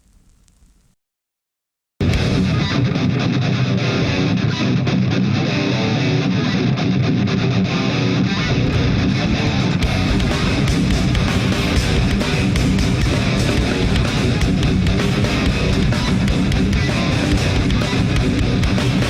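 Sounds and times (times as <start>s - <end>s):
metal band playing live: 2.0s - 19.0s.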